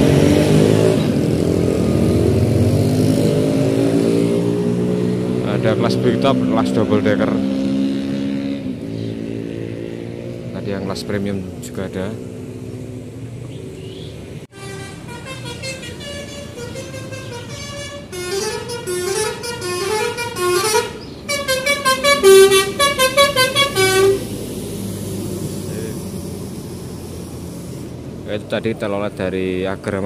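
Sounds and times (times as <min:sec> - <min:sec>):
bus horn playing a tune: 0:14.5 - 0:24.4.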